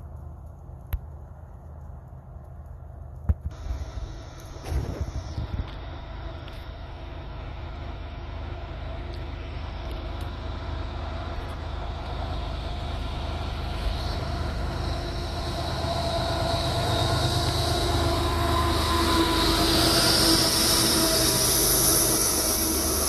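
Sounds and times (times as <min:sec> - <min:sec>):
train engine drone: 0:00.0 - 0:23.0
rising hiss: 0:03.4 - 0:07.9, 0:12.0 - 0:23.0
train horn tones: 0:13.6 - 0:23.0.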